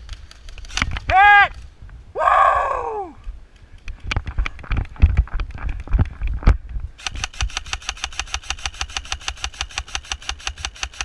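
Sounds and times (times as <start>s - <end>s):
airsoft gun full-auto burst: 7.0s - 11.0s.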